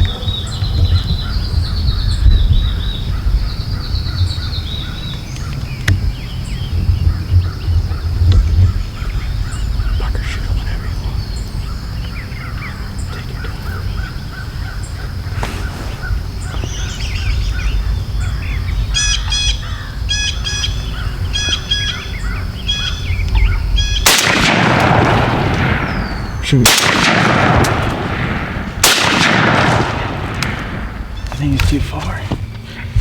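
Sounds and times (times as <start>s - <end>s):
birds calling: 0.0s - 33.0s
low wind rumble: 0.0s - 33.0s
shotgun blast: 24.0s - 31.4s.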